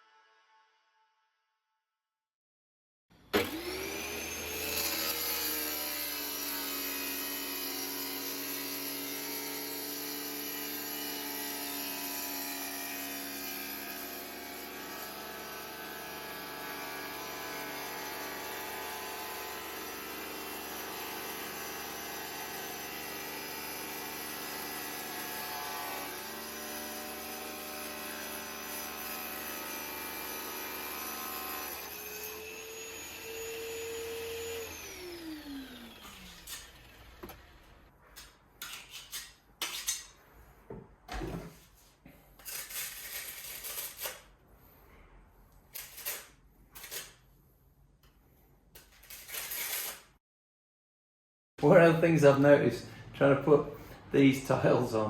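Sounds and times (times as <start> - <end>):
tile cutter motor whining: 3.2 - 38.0.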